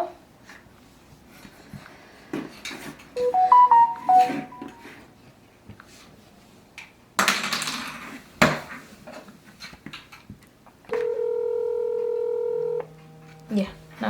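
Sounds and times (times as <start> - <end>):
telephone call tone: 3.2 - 4.9, 10.9 - 13.6.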